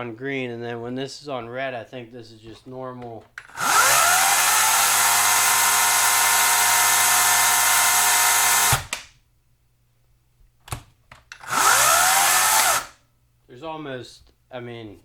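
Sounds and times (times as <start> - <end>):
chainsaw high whine: 3.5 - 8.9, 11.4 - 13.0.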